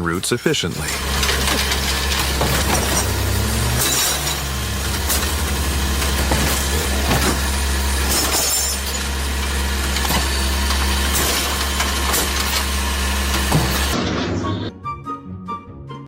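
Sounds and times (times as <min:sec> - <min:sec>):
garbage truck running: 0:00.0 - 0:15.0
clanks and glass clatter: 0:00.8 - 0:12.8.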